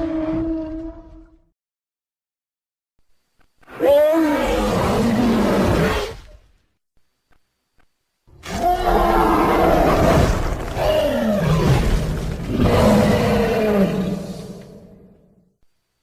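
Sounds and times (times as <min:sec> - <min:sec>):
dinosaur roar: 0:00.0 - 0:01.4, 0:03.7 - 0:06.2, 0:08.3 - 0:15.3.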